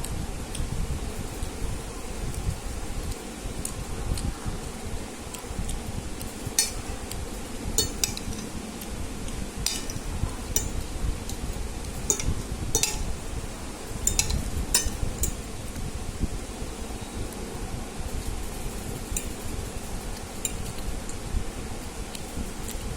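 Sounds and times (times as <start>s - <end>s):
fan humming: 0.0s - 22.9s
metal utensil clinking on bowl: 6.6s - 6.9s, 7.8s - 8.5s, 9.6s - 10.9s, 12.1s - 13.2s, 14.0s - 15.4s.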